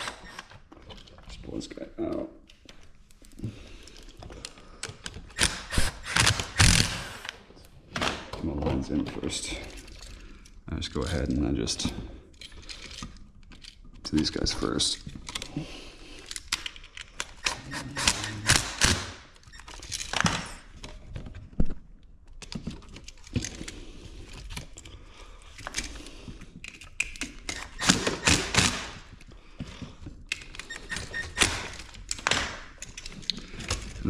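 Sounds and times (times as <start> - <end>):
plastic and wire handling clicks: 15.0 - 15.6, 16.2 - 18.5, 19.3 - 27.9, 29.0 - 34.0.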